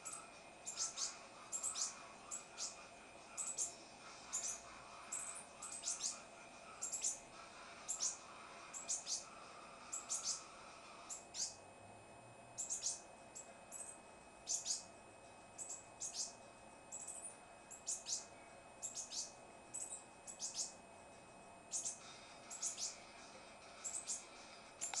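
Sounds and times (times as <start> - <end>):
bird high-pitched calls: 0.0 - 2.8, 3.4 - 6.2, 7.8 - 10.5, 11.1 - 11.6, 12.6 - 14.9, 15.6 - 20.8, 21.7 - 23.0, 23.8 - 25.0.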